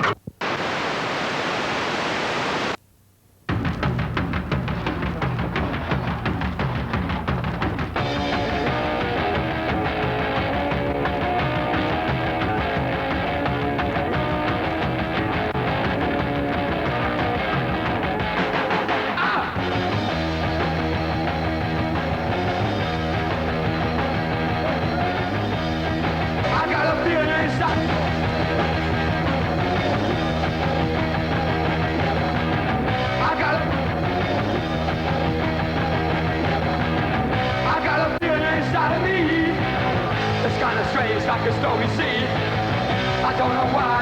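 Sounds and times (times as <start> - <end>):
rock band playing: 3.5 - 44.0
person singing: 26.4 - 28.8, 33.1 - 34.2, 37.5 - 44.0.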